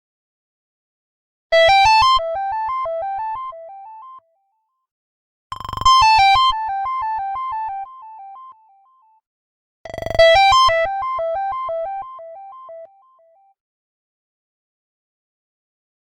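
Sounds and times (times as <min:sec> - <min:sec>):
synth ringtone: 0:10.1 - 0:13.4.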